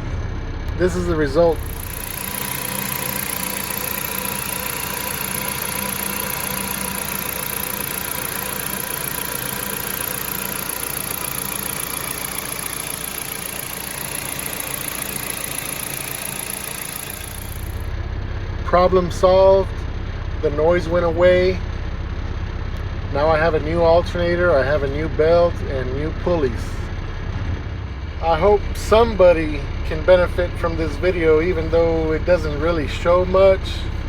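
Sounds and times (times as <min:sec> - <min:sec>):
car engine running: 0:00.0 - 0:34.0.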